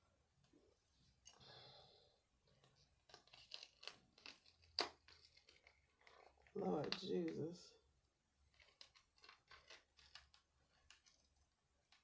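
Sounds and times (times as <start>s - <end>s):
soft plastic scrape: 2.5s - 7.1s, 8.4s - 12.0s.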